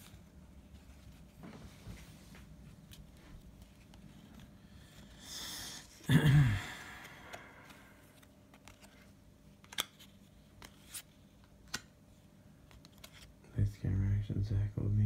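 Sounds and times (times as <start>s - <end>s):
trading cards rustling: 6.8s - 11.9s, 12.6s - 13.3s.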